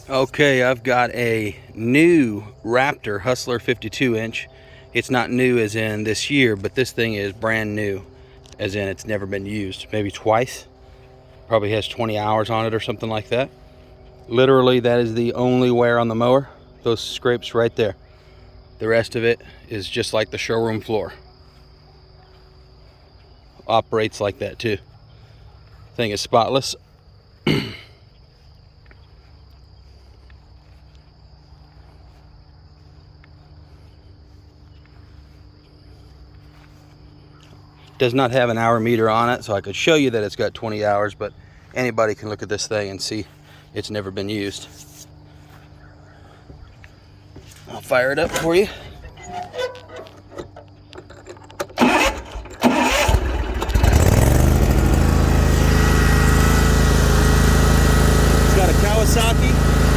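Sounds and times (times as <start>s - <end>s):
mower engine starting and running: 0.0s - 21.6s, 33.6s - 35.4s, 46.9s - 59.9s
insects chirring: 0.0s - 56.0s
starter motor cranking: 47.7s - 59.9s.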